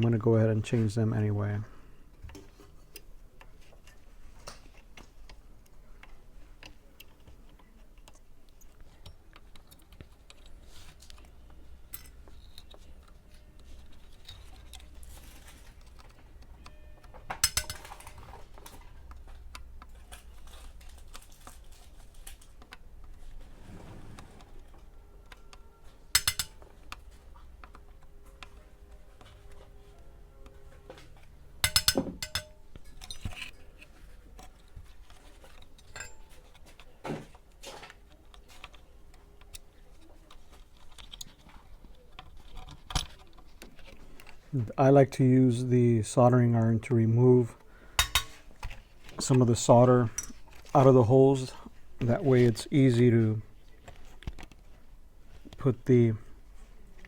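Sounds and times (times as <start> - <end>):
hand tools clicking on circuit board: 15.8 - 18.1, 25.3 - 27.0, 31.6 - 32.5.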